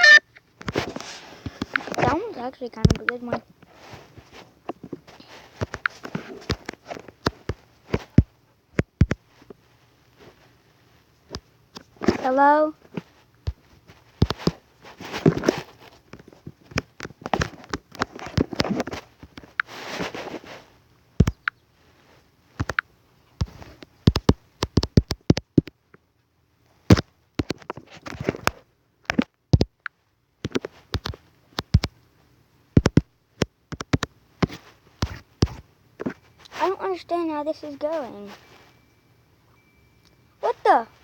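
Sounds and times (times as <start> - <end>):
short hissy rustles: 0.8 - 2.0, 19.7 - 20.8.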